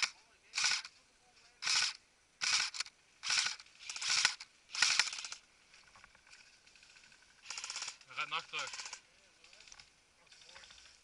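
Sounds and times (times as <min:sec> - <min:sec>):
electric gun firing bursts: 0:00.0 - 0:00.9, 0:01.6 - 0:05.4, 0:06.8 - 0:09.0.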